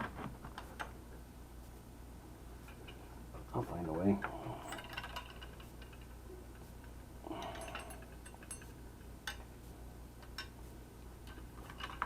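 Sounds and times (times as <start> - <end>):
steady low hum: 0.0 - 12.0
small metallic parts clicking: 7.3 - 9.4.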